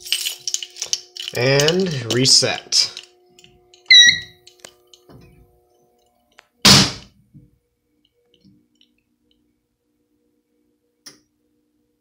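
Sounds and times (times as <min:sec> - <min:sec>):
small clicks and rattles: 0:00.0 - 0:05.1
loud thunk: 0:06.7 - 0:07.1.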